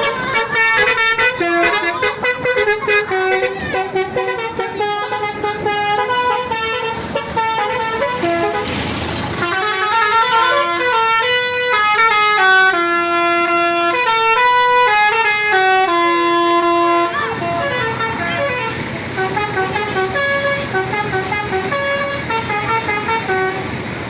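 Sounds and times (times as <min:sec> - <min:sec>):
musical bus horn playing tune: 0:00.0 - 0:24.0.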